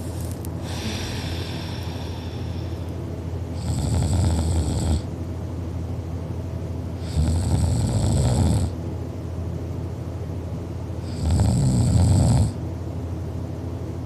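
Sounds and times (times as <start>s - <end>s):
person snoring: 0.6s - 2.9s, 3.6s - 5.1s, 7.0s - 8.7s, 11.0s - 12.6s.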